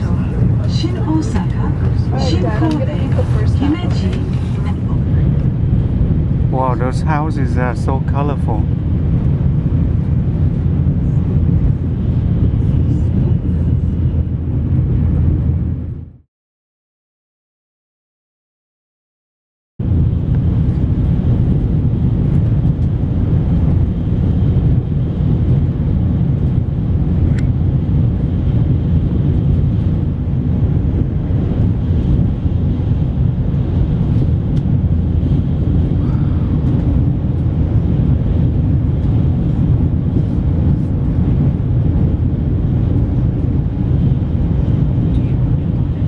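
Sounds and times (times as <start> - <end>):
train cabin rumble at speed: 0.0 - 16.2, 19.8 - 46.0.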